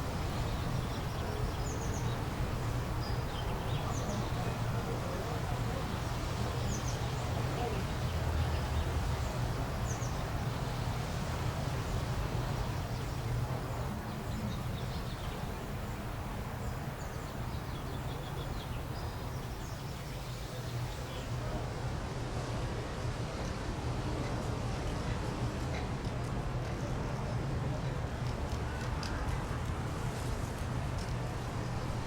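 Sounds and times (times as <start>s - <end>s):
steady low hum: 0.0s - 22.3s
background hiss: 0.0s - 23.2s, 29.7s - 32.0s.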